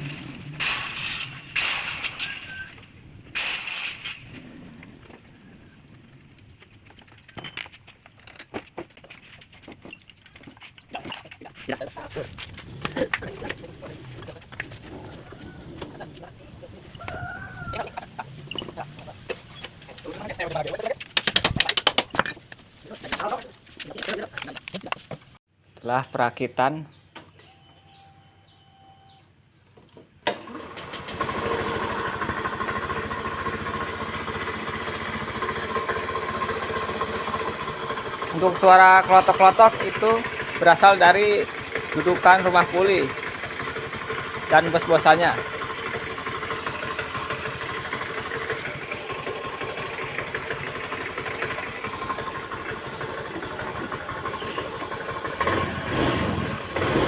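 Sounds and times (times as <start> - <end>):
motorcycle engine idling: 31.2 - 57.0.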